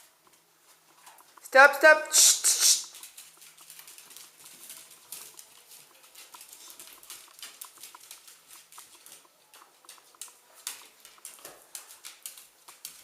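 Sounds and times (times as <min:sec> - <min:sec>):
paws pattering on hard floor: 0:02.8 - 0:13.0.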